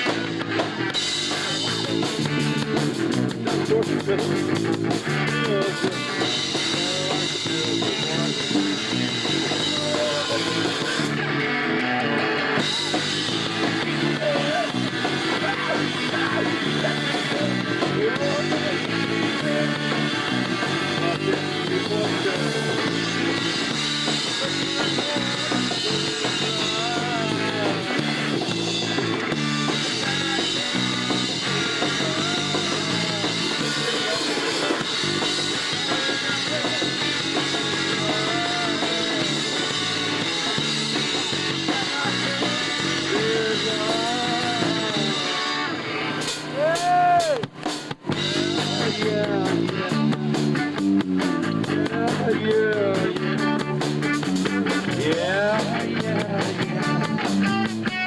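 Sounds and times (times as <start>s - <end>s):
electric guitar: 0.0s - 58.0s
live punk rock band: 0.0s - 58.0s.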